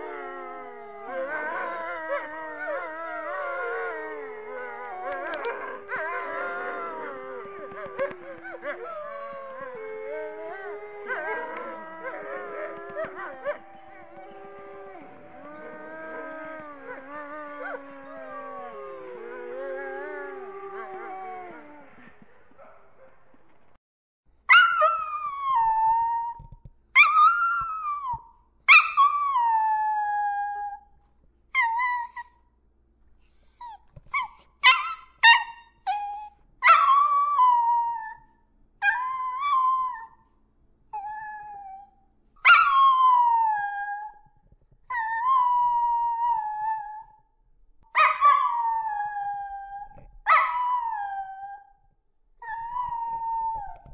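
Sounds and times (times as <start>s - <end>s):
dog howling: 0.0s - 22.9s, 48.0s - 51.8s.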